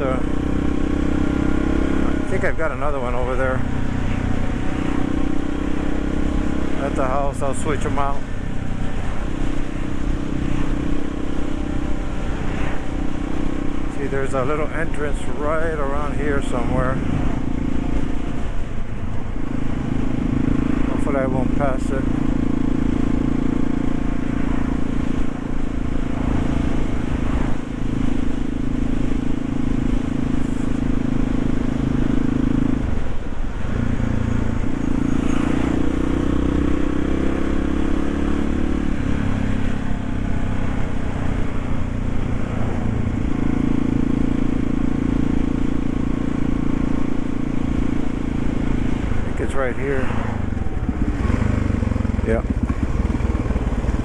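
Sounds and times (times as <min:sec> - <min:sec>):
motorcycle engine running: 0:50.2 - 0:54.0.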